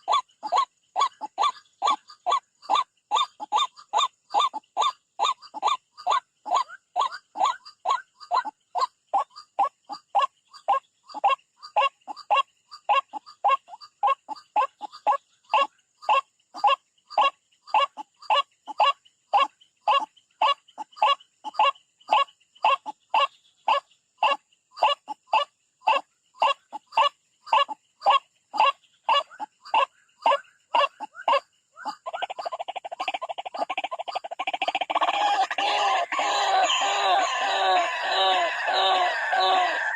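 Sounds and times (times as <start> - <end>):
bird repeating nasal call: 34.4 - 39.9.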